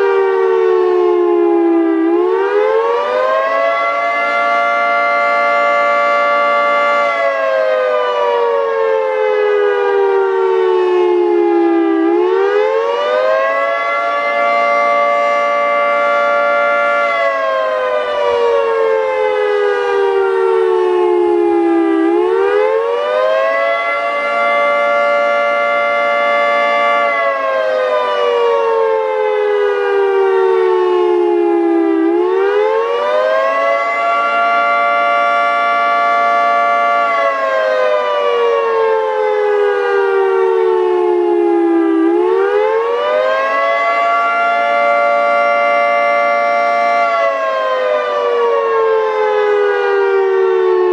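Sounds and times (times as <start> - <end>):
three-tone siren: 0.0 - 50.9.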